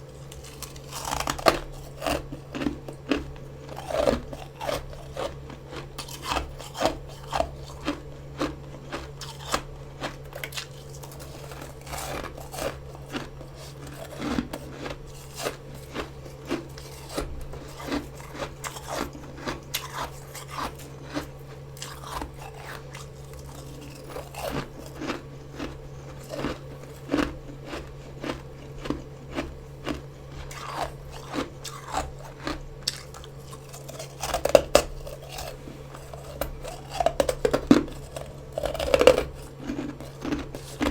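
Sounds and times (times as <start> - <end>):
crunching of chewed frost: 0.0 - 40.9
steady low hum: 0.0 - 40.9.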